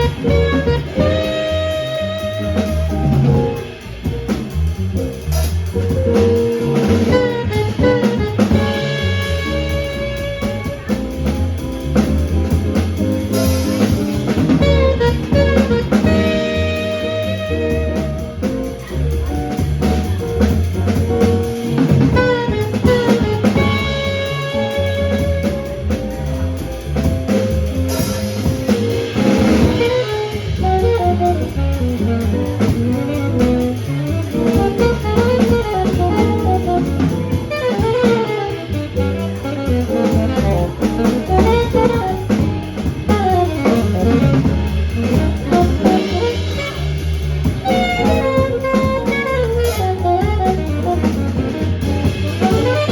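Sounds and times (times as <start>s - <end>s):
saxophone: 0.0s - 3.8s, 6.2s - 12.6s, 13.2s - 52.9s
bass line: 0.0s - 52.9s
drum kit: 0.0s - 52.9s
piano: 0.0s - 52.9s.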